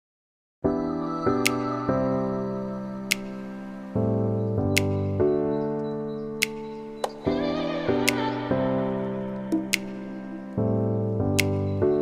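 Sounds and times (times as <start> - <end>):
sharp percussive clicks: 3.1 - 3.5, 6.4 - 7.3, 9.5 - 10.5.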